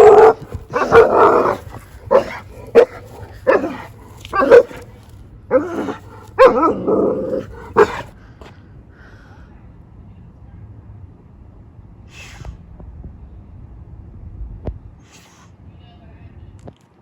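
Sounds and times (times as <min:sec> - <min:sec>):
dog barking: 0:00.0 - 0:08.1.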